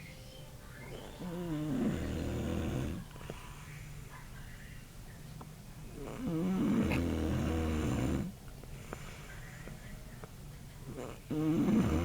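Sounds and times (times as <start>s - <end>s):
person snoring loudly: 1.2s - 3.0s, 11.0s - 12.0s.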